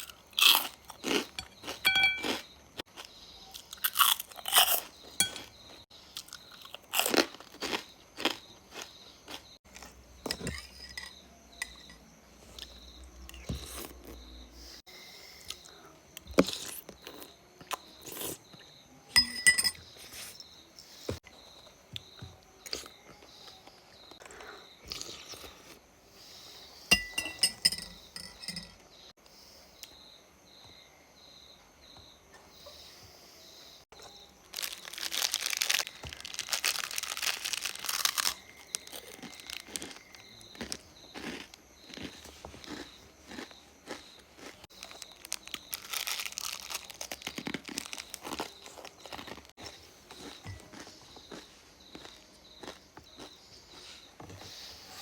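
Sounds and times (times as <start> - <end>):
person chewing crisp food: 0.0 - 10.5, 15.5 - 18.4, 22.6 - 25.8, 33.9 - 54.1.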